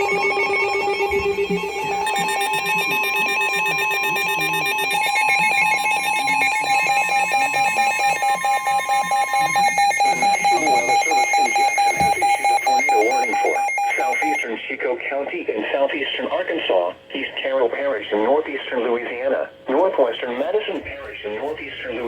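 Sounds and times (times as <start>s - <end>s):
rapidly pulsing electronic beep: 0.0s - 14.5s
steady alarm tone: 0.0s - 14.5s, 20.9s - 22.0s
person speaking: 10.2s - 22.0s.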